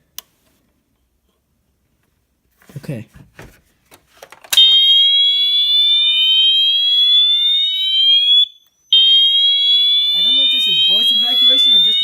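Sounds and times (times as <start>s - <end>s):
rising high-pitched siren tone: 4.6s - 12.0s.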